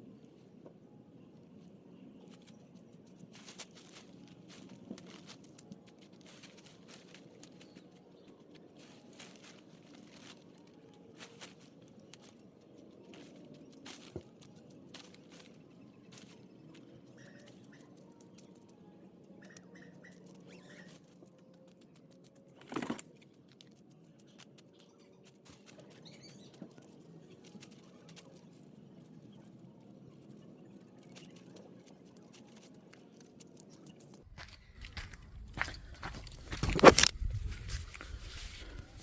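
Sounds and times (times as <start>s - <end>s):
tent fabric rustling: 36.2s - 39.0s.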